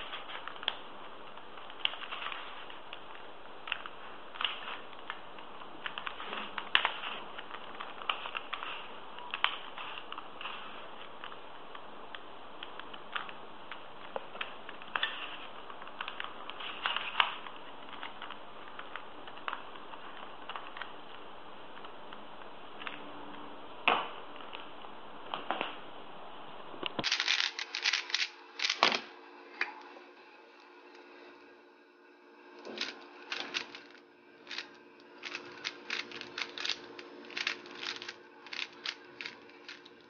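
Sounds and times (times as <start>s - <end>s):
puzzle cube turning clicks: 27.0s - 29.0s, 32.7s - 40.0s.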